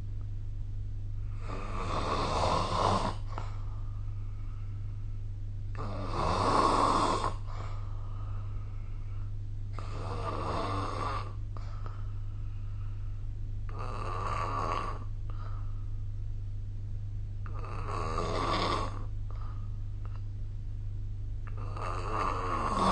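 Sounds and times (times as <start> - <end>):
steady low hum: 0.0 - 22.9
person snoring: 1.2 - 3.6, 5.7 - 12.0, 13.7 - 15.6, 17.4 - 20.2, 21.4 - 22.9.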